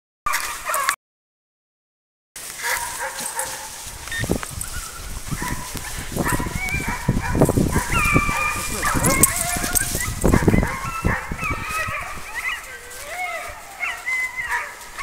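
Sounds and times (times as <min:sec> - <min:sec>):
wind buffeting microphone: 0:03.7 - 0:15.0
dog whining: 0:07.8 - 0:14.6.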